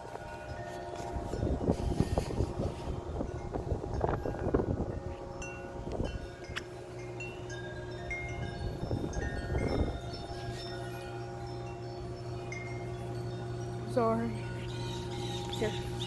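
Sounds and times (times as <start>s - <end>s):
wind buffeting microphone: 0.0s - 10.8s
wind chimes clanging: 0.0s - 16.0s.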